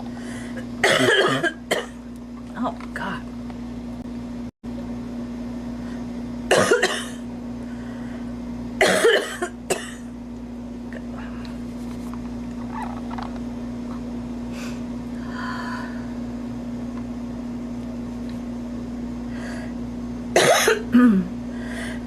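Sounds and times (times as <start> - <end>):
steady low hum: 0.0 - 22.0
woman coughing: 0.8 - 2.0, 6.5 - 7.2, 8.8 - 10.0, 20.4 - 21.4.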